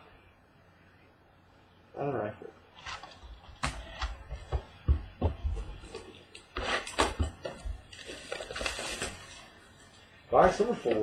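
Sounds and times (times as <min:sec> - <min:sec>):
cards rustling: 0:05.8 - 0:09.6.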